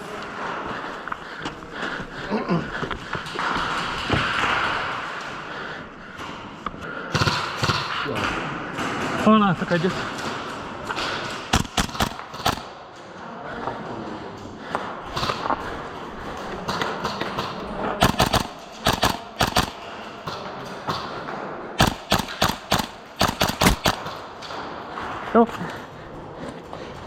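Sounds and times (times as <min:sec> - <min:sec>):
airsoft guns firing: 0:07.0 - 0:12.8, 0:15.1 - 0:15.6, 0:16.6 - 0:21.1, 0:21.8 - 0:24.6.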